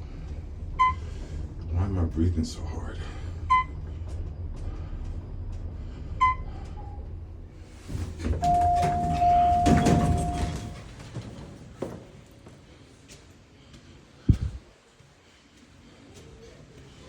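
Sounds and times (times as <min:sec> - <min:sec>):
short electronic beeps: 0:00.8 - 0:01.0, 0:03.5 - 0:03.8.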